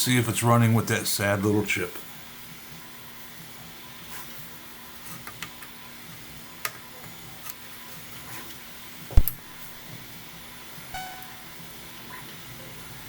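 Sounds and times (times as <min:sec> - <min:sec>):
faint steady hum: 0:05.8 - 0:13.0
sharp thump: 0:09.2 - 0:09.4
brief pitched tone: 0:11.0 - 0:11.6.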